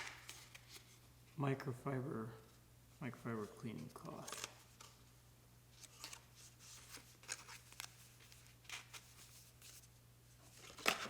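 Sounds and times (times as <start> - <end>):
packaging rustling: 5.8 - 9.8.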